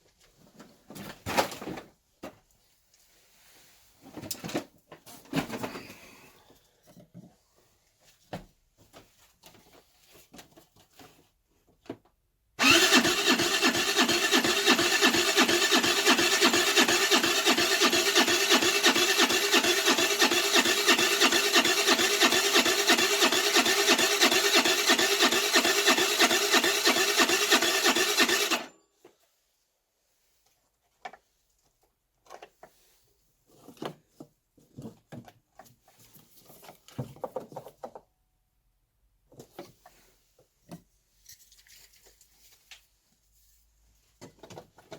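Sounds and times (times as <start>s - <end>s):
electric starter cranking engine: 12.6s - 28.7s.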